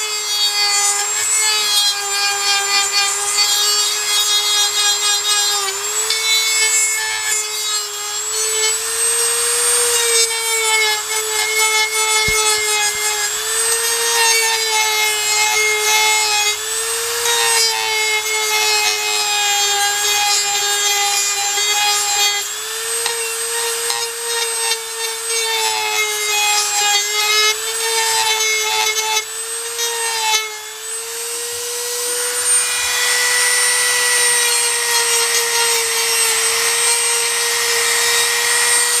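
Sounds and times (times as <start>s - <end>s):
high-speed power tool whining: 0.0s - 39.0s.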